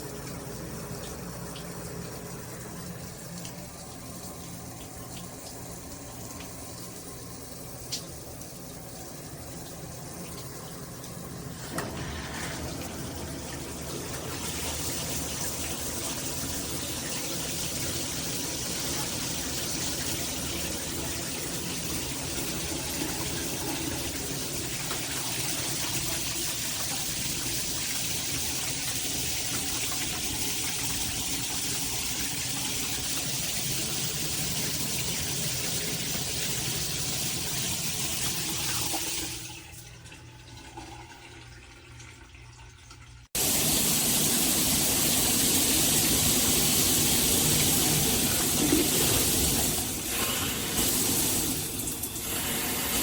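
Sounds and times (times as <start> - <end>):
shower head spraying water: 43.4 - 53.0.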